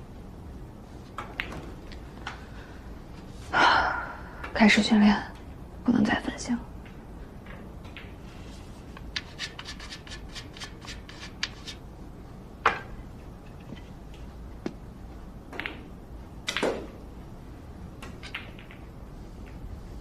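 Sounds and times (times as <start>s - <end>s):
billiard balls knocking and rattling: 1.0s - 2.5s, 6.8s - 17.0s, 17.9s - 19.7s
cue striking billiard balls: 1.1s - 2.4s, 7.4s - 11.8s, 12.6s - 14.8s, 15.5s - 17.0s, 18.0s - 19.6s
chalk rubbing on cue tip: 8.4s - 11.8s.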